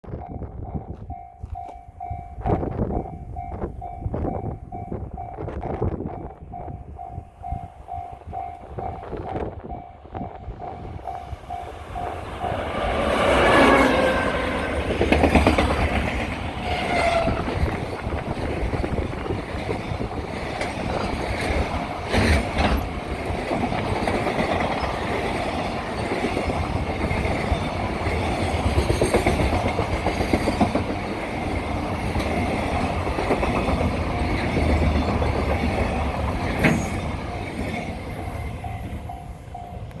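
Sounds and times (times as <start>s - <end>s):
level crossing warning bell: 0.1s - 40.0s
locomotive whine: 0.1s - 40.0s
train wheels clattering over rail joints: 11.8s - 40.0s.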